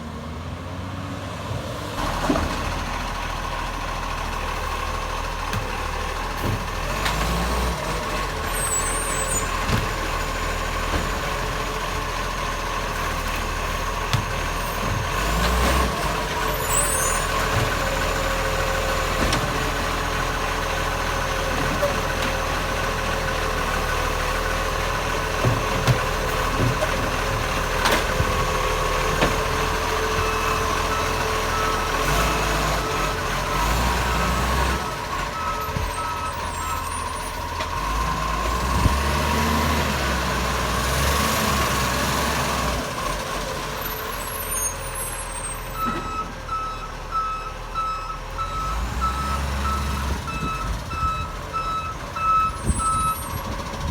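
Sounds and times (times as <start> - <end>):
garbage truck engine running: 0.4 - 53.9.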